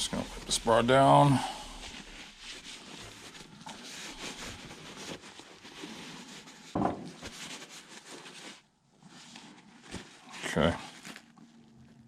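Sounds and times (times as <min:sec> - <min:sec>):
thump: 0:06.8 - 0:07.1.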